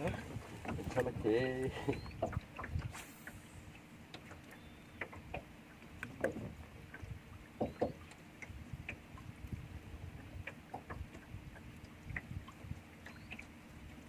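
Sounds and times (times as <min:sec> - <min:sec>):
water lapping against hull: 0:00.0 - 0:14.0
light knocks and clicks: 0:04.1 - 0:09.0.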